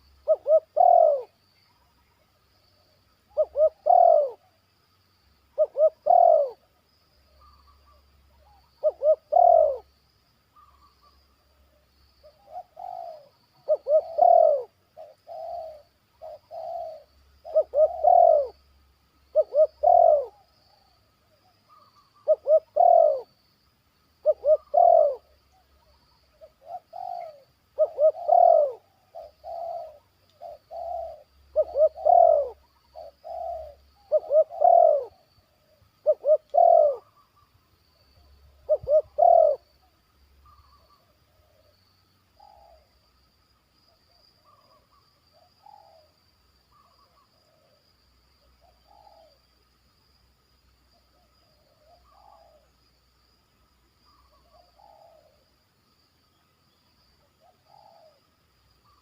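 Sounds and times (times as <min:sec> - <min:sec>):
doves cooing: 0:00.0 - 0:01.4, 0:03.3 - 0:04.6, 0:05.6 - 0:06.7, 0:07.5 - 0:09.9, 0:12.3 - 0:18.6, 0:19.3 - 0:23.3, 0:24.2 - 0:25.7, 0:26.3 - 0:37.5, 0:38.3 - 0:39.8, 0:42.4 - 0:42.9, 0:48.6 - 0:49.4, 0:51.2 - 0:52.7, 0:54.1 - 0:55.5, 0:57.4 - 0:58.3.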